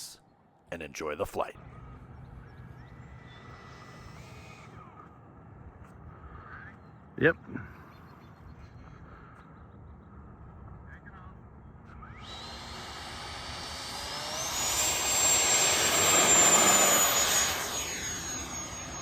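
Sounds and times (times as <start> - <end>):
electric ducted fan whine: 12.0 - 19.0.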